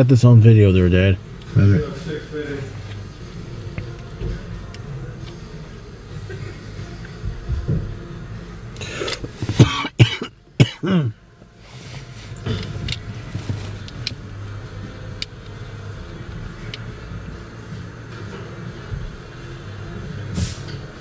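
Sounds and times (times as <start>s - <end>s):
steady low hum: 0.0s - 21.0s
person coughing: 9.6s - 11.2s.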